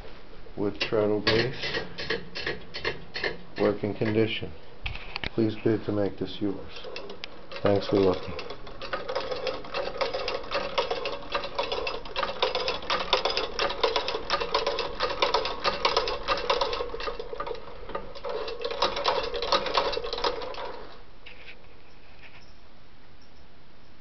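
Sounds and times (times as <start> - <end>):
sewing machine clattering: 0.8 - 4.4, 6.5 - 21.0.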